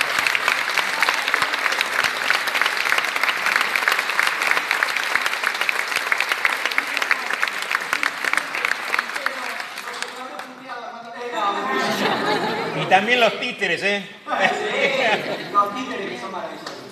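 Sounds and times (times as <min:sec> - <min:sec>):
audience applauding: 0:00.0 - 0:10.7.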